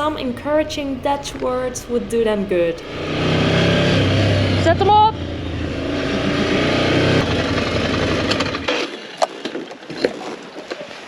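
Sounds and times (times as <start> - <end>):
motorcycle engine running: 0.0 - 8.8.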